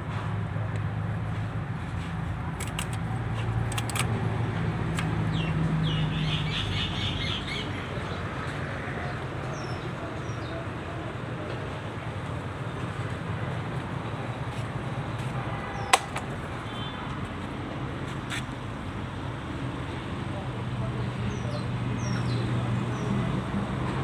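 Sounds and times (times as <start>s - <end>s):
birds chirping: 5.0s - 11.1s.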